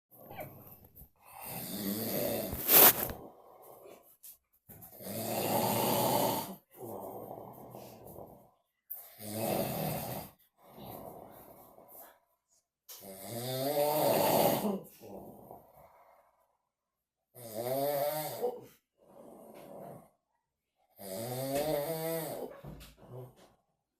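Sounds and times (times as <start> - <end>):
man snoring: 1.3 - 3.1, 5.0 - 8.3, 9.0 - 11.3, 13.0 - 15.8, 17.3 - 20.0, 20.9 - 22.5.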